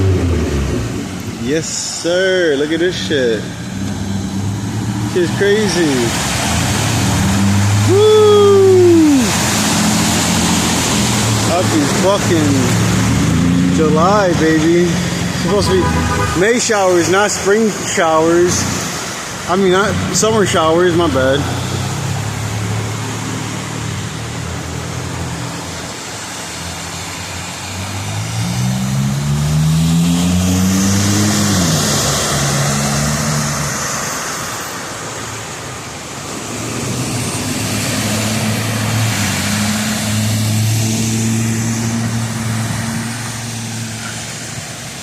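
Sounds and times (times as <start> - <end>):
tyres hissing on water: 0.1 - 45.0
engine running steadily: 7.5 - 16.4
car accelerating past: 26.6 - 34.8.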